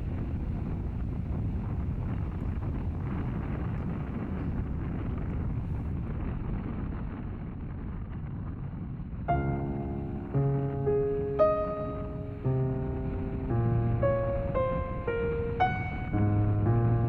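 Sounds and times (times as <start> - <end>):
wind buffeting microphone: 0.0 - 16.7
soft piano music: 9.3 - 17.0.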